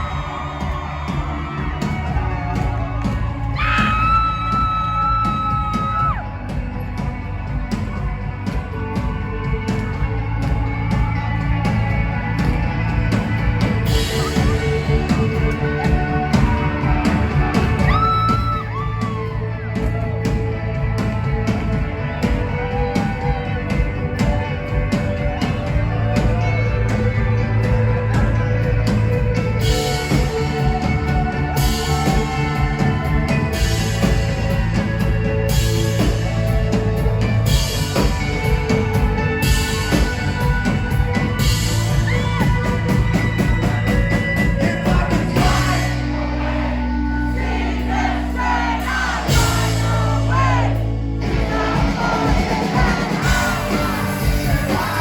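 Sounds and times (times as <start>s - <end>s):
rock band playing live: 0.0s - 55.0s
person singing: 51.3s - 55.0s.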